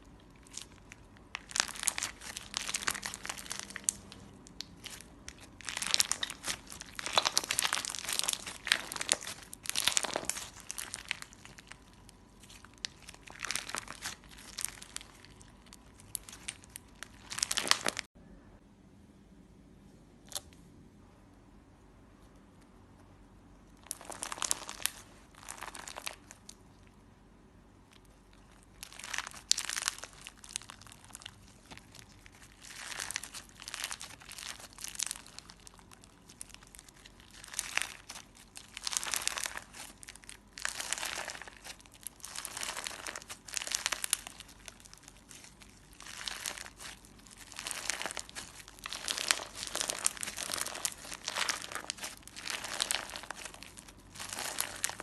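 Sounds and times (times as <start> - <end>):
slime squishing by hand: 0.0 - 18.1, 23.5 - 27.0, 27.6 - 55.0.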